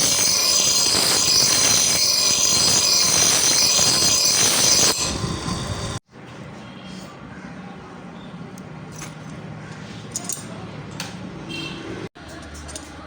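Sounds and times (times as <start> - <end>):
power grinder grinding steel: 0.0 - 6.0.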